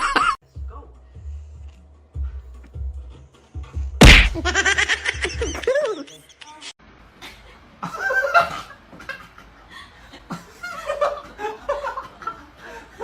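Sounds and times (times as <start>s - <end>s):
person laughing: 4.0s - 6.2s.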